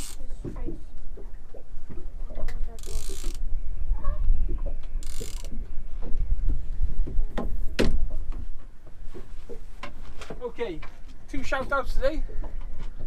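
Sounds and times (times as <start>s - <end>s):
fishing tackle clicking and ratcheting: 0.0s - 0.2s, 2.8s - 3.4s, 5.0s - 5.5s.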